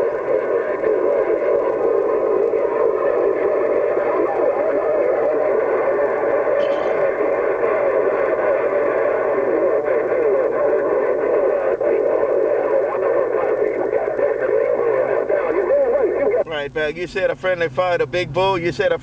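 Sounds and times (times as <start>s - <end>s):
garbled radio voices: 0.0s - 19.0s
radio static: 0.0s - 19.0s.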